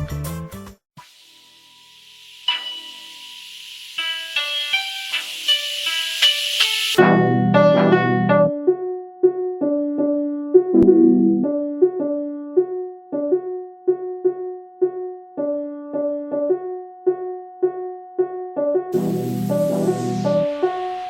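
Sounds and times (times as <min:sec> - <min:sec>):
bass and drums: 0:00.0 - 0:00.8
electronic keyboard melody: 0:06.9 - 0:21.0.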